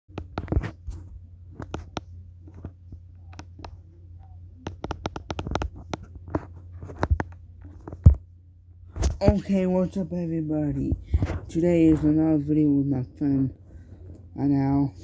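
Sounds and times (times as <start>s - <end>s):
handling clicks and scratches: 0.1s - 8.2s
low steady hum: 0.1s - 15.0s.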